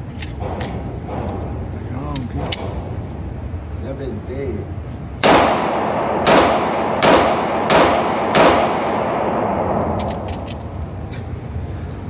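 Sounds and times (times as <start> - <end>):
gunshots with ringing echo: 5.2 - 11.0.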